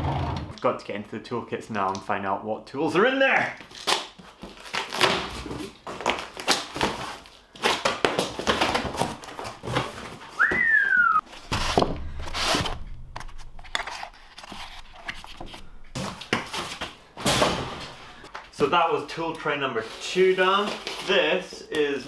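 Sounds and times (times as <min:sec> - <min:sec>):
packaging rustling: 0:03.6 - 0:18.6, 0:19.8 - 0:22.0
whistled falling note: 0:10.4 - 0:11.2.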